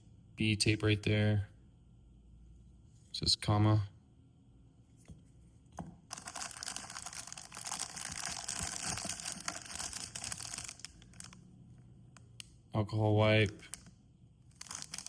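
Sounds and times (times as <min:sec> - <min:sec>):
packaging crinkling and rustling: 0:06.1 - 0:11.4, 0:13.4 - 0:13.9, 0:14.5 - 0:15.0.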